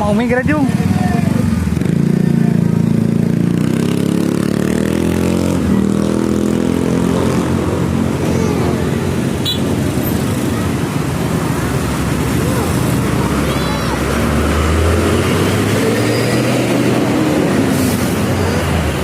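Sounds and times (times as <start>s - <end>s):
road noise: 0.0s - 19.0s
bus engine running: 7.2s - 19.0s.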